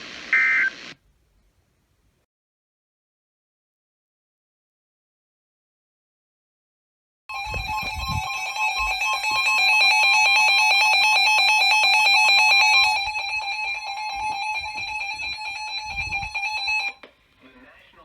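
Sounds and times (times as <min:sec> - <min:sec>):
electronic alarm warbling: 0:00.0 - 0:00.9, 0:07.3 - 0:17.0
steady alarm tone: 0:07.3 - 0:17.0.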